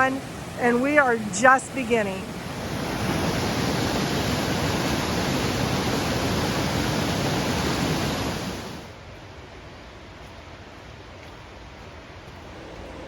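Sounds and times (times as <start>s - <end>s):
waterfall rushing: 0.0s - 9.0s.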